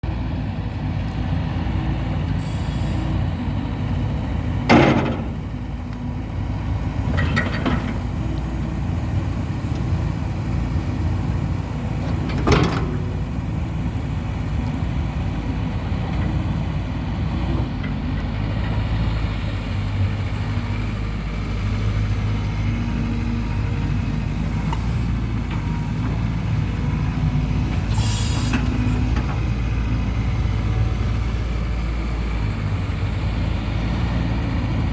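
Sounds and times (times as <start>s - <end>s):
excavator diesel engine running: 0.0s - 34.9s
short hiss: 2.4s - 3.2s, 27.9s - 28.6s.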